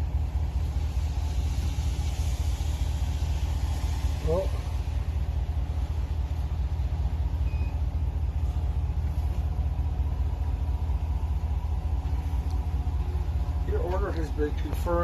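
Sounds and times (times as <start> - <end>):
low machinery rumble: 0.0 - 15.0
faint short beep: 7.4 - 7.8.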